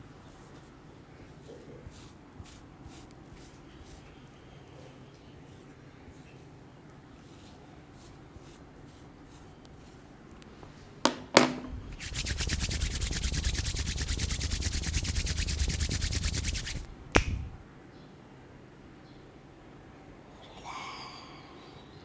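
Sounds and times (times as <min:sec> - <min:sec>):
rapid rhythmic rubbing: 0:12.0 - 0:17.0
hands snapping: 0:16.6 - 0:17.6.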